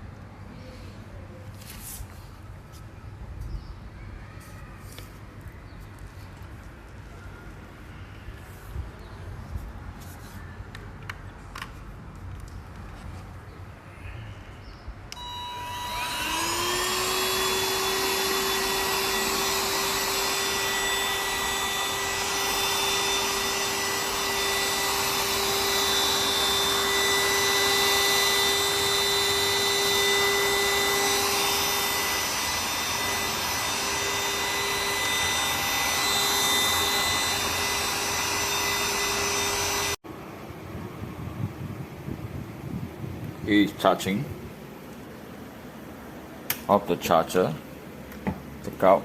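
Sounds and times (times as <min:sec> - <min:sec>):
stick vacuum cleaner whining: 0:15.1 - 0:40.0.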